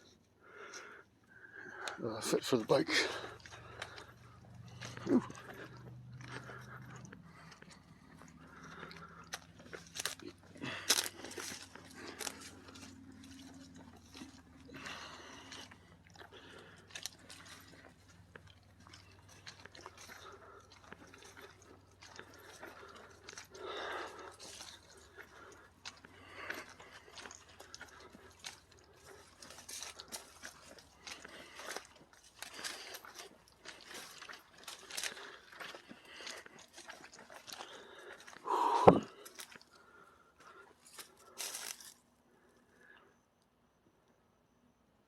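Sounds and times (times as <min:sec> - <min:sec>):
footsteps crunching on trail: 0:01.9 - 0:42.1.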